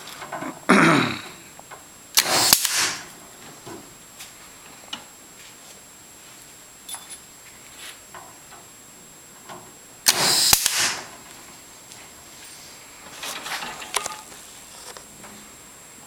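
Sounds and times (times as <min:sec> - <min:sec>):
clip gun firing with snap: 0:02.2 - 0:03.1, 0:10.1 - 0:11.1.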